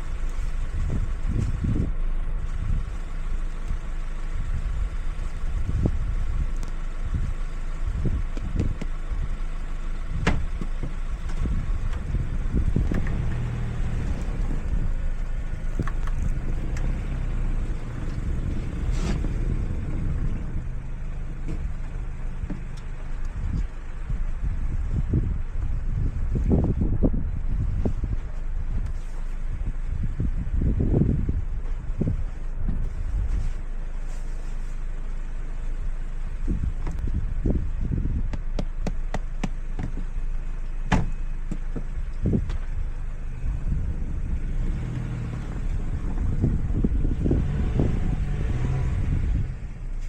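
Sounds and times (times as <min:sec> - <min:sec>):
car engine running: 0:00.0 - 0:50.0
low thumps: 0:10.2 - 0:15.0.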